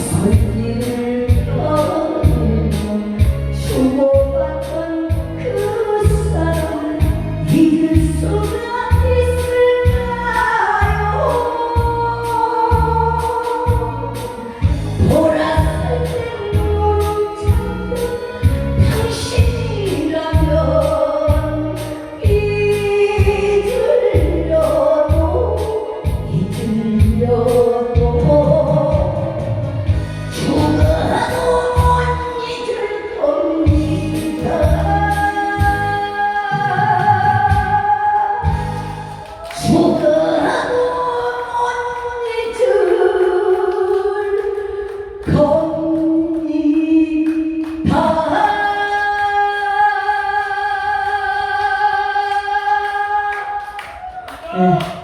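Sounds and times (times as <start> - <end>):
woman singing: 0.0 - 55.0
bass drum beat: 5.1 - 16.0, 26.1 - 32.2, 33.7 - 39.3.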